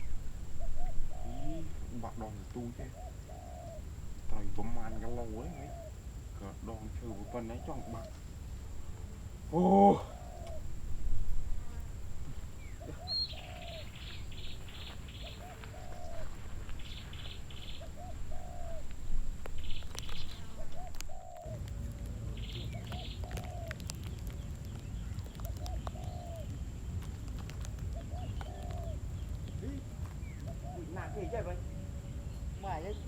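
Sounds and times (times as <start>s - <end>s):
bird chirping rapidly: 0.0s - 8.1s, 12.5s - 21.6s
dove cooing: 0.0s - 26.6s, 27.4s - 31.8s.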